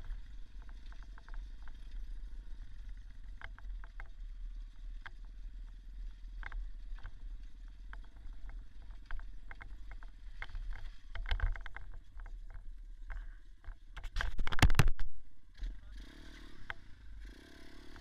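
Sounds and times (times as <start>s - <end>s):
dirt bike engine running: 0.0s - 11.7s, 14.1s - 18.0s
rattling clicks and knocks: 7.9s - 15.0s.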